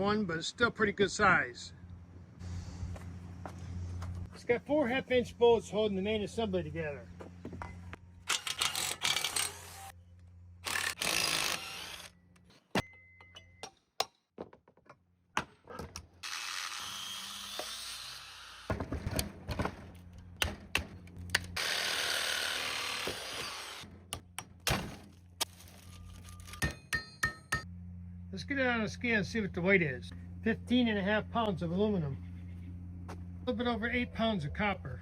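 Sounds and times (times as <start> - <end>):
power tool running: 8.2 - 10.0, 10.6 - 12.2, 16.2 - 18.7, 21.5 - 23.9.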